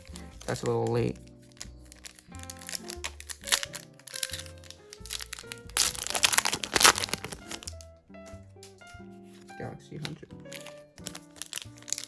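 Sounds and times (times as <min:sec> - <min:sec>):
wrapper being torn and crinkled: 0:00.0 - 0:07.9, 0:10.5 - 0:12.0
background music with held notes: 0:00.0 - 0:12.0.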